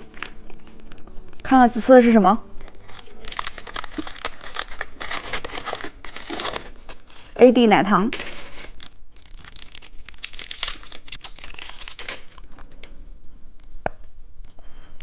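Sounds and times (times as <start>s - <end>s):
plastic wrapper crinkling and tearing: 0.0s - 1.4s, 2.4s - 7.4s, 8.1s - 13.0s.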